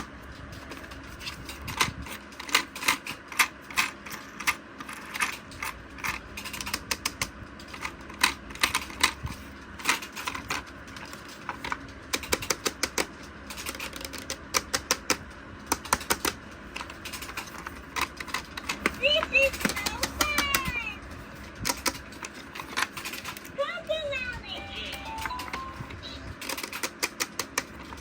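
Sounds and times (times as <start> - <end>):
low steady hum: 15.2 - 26.9.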